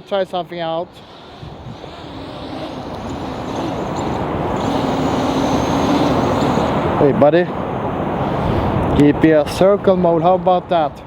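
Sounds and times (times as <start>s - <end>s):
drone propellers buzzing: 0.9s - 8.4s.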